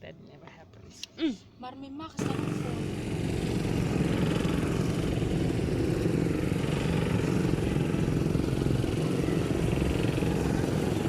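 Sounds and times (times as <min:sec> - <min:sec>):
small vehicle engine running: 0:02.2 - 0:11.0.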